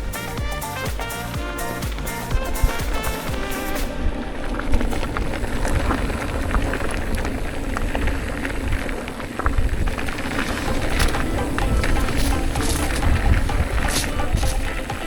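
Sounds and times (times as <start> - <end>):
skis scraping over snow: 1.1 - 15.0
wind rumbling on microphone: 1.7 - 15.0
small clicks of snow and ice: 4.5 - 11.2.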